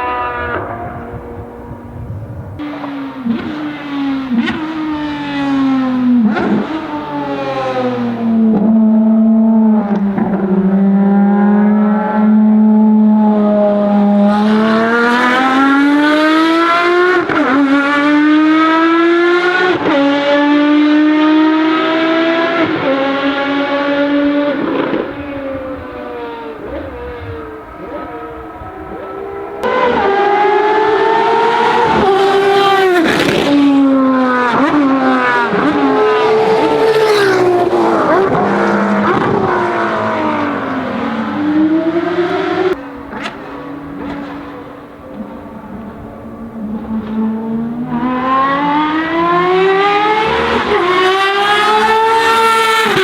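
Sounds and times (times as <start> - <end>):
racing car engine at high revs: 0.0 - 53.0.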